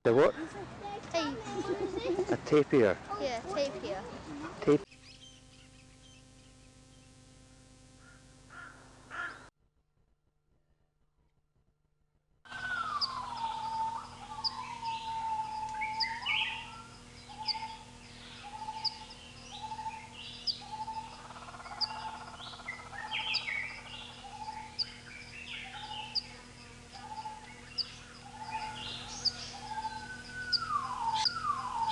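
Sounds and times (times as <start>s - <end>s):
steady low hum: 0.1s - 9.5s, 12.5s - 31.9s
scattered bird calls: 8.0s - 9.5s, 12.5s - 31.9s
high bird chirp: 12.5s - 31.9s
repeating bird call: 12.5s - 31.9s
long falling whistle: 29.8s - 31.9s.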